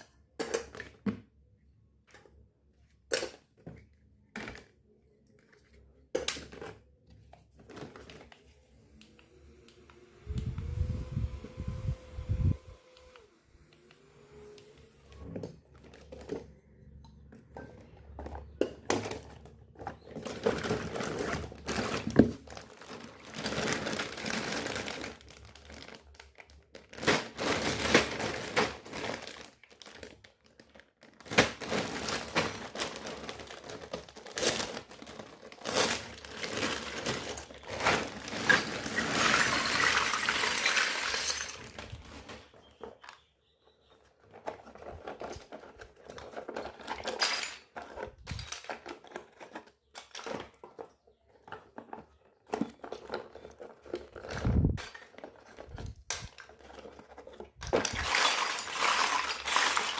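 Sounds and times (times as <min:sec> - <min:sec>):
plastic packaging crinkling: 0:19.7 - 0:43.3, 0:44.2 - 0:59.9.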